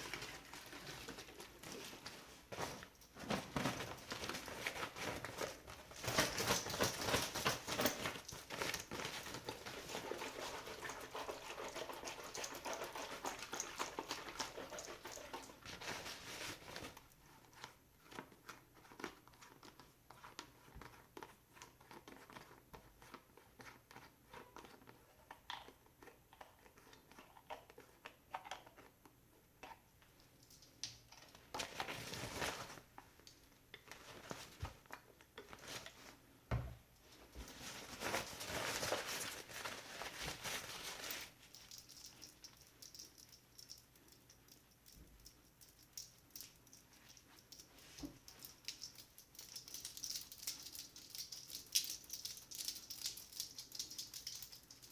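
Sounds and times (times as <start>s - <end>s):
material crinkling and rustling: 0.0s - 25.8s, 30.6s - 43.7s.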